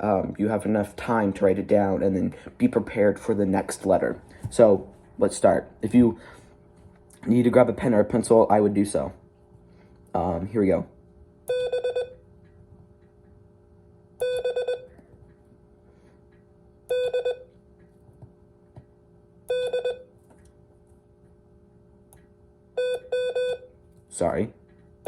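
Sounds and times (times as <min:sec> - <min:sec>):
morse code beeps: 0:11.5 - 0:12.2, 0:14.2 - 0:14.9, 0:16.9 - 0:17.5, 0:19.5 - 0:20.1, 0:22.8 - 0:23.7.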